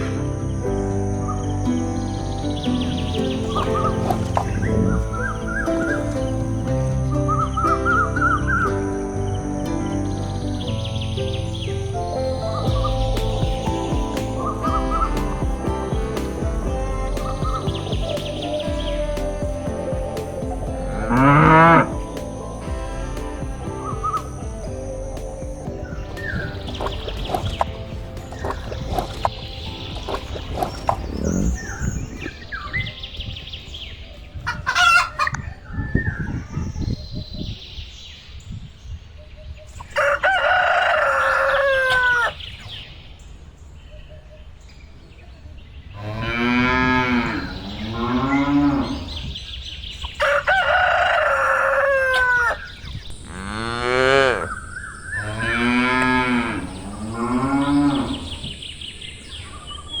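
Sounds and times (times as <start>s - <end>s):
chicken and rooster calls: 39.8s - 42.5s, 50.0s - 58.6s
cattle mooing: 46.0s - 49.3s, 53.3s - 54.6s, 55.2s - 58.6s.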